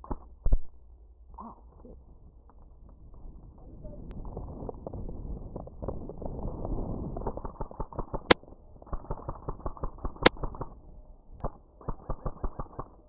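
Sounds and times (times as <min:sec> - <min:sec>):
sharp loud cracks: 0:07.2 - 0:10.8
airsoft rifle firing bursts: 0:11.4 - 0:13.0.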